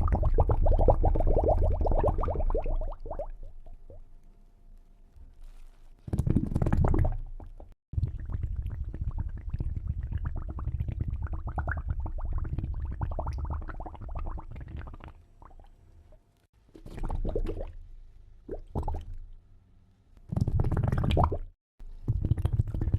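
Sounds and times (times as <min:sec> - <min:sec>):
water bubbling and gurgling: 0:00.0 - 0:04.0, 0:06.2 - 0:15.7, 0:18.5 - 0:19.2, 0:20.4 - 0:21.6.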